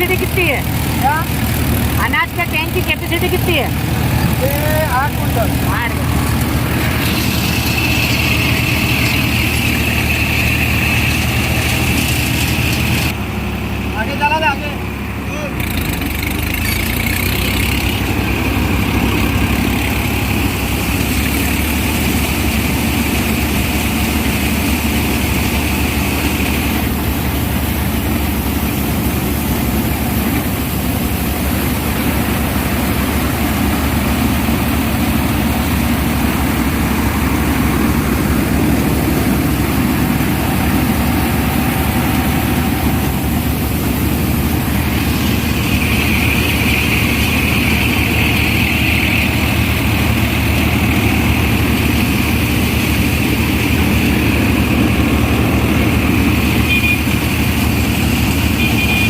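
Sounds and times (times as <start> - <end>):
combine harvester drone: 0.0 - 59.0
high machinery whine: 0.0 - 59.0.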